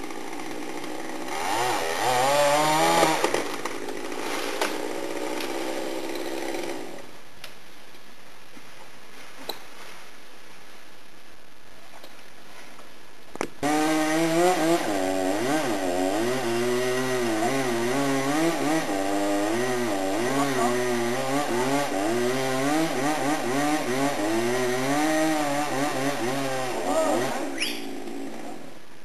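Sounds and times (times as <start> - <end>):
chainsaw cutting wood: 0.0 - 7.1, 13.6 - 28.8.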